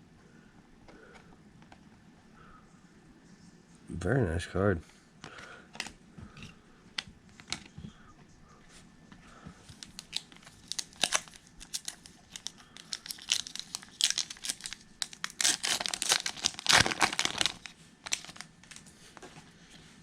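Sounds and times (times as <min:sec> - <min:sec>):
foil wrapper crinkling and tearing: 0:09.7 - 0:18.8.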